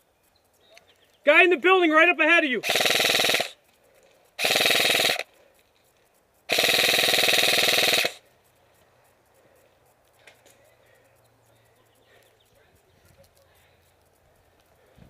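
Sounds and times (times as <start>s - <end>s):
airsoft rifle firing full auto: 2.4s - 3.7s, 4.4s - 5.4s, 6.5s - 8.2s.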